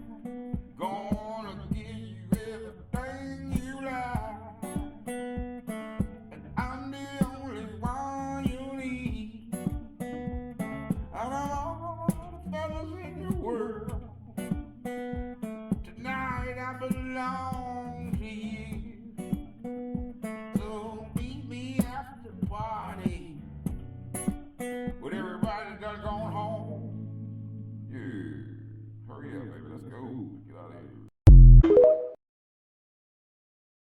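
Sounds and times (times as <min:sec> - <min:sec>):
steady beat: 0:00.0 - 0:24.5
guitar: 0:00.0 - 0:30.6.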